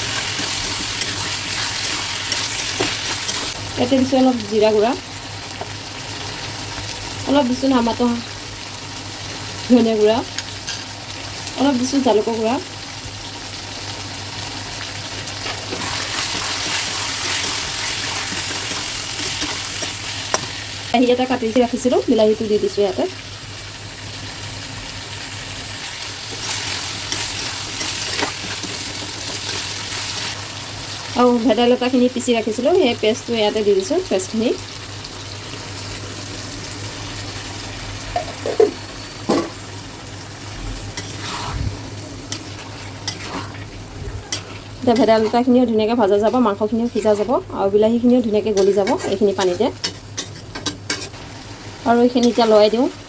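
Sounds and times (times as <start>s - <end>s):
chicken sizzling in oil: 0.0s - 53.0s
spatula scraping a pan: 41.0s - 41.7s, 42.3s - 43.7s, 48.6s - 51.2s.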